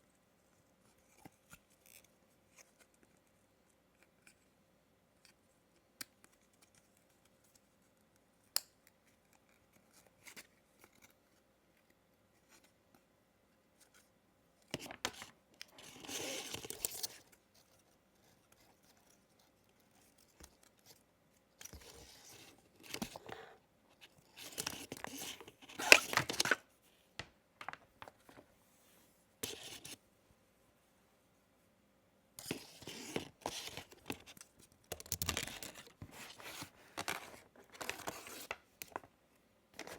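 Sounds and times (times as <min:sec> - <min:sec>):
packaging tearing and rustling: 0:24.4 - 0:26.6.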